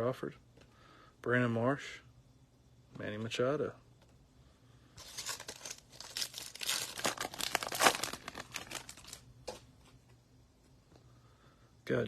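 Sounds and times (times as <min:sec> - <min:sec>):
foil wrapper tearing and crinkling: 0:05.0 - 0:09.2.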